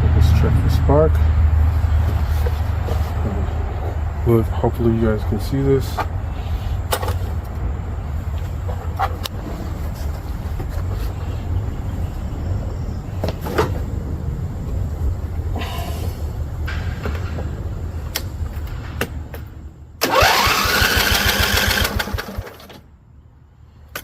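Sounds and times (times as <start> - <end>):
steady low rumble: 0.0 - 20.0
electric starter cranking engine: 20.0 - 22.8.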